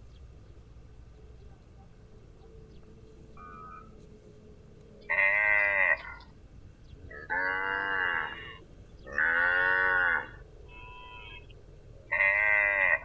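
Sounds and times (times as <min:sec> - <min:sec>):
cow mooing: 0:05.1 - 0:06.2, 0:07.1 - 0:11.4, 0:12.1 - 0:13.0.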